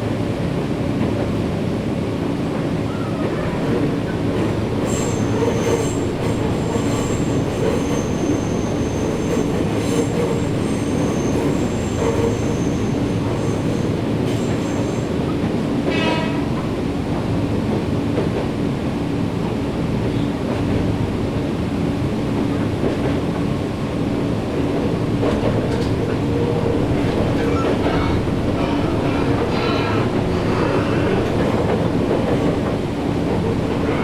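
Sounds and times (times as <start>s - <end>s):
wheels rumbling on rail: 0.0s - 34.0s
faint high wheel squeal: 4.9s - 15.2s, 27.4s - 31.1s.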